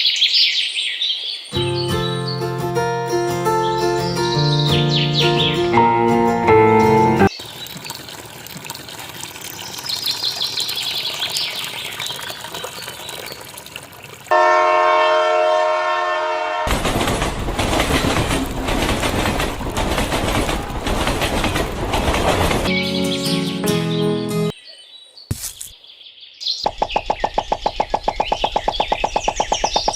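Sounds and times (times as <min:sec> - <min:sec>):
train horn: 0:14.3 - 0:16.7
train wheels clattering: 0:16.7 - 0:22.7.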